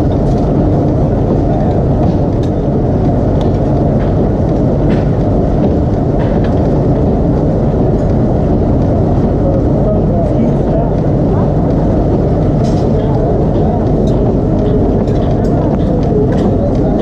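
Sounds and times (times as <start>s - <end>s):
low rumble of forge machinery: 0.0s - 17.0s.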